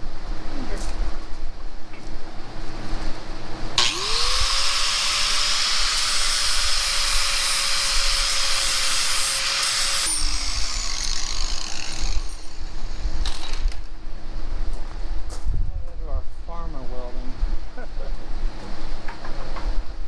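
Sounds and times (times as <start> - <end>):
angle grinder grinding metal: 3.8 - 13.6.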